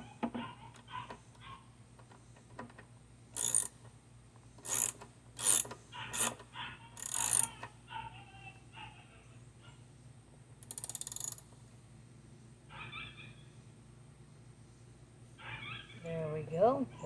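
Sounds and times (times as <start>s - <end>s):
ratchet wrench clicking: 3.4s - 3.9s, 4.6s - 6.4s, 7.0s - 7.7s, 10.6s - 11.5s.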